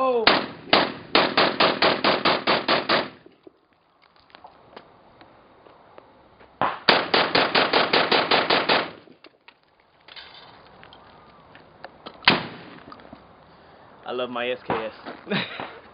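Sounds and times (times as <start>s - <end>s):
rifle shots in quick succession: 0.3s - 3.2s, 6.6s - 9.0s.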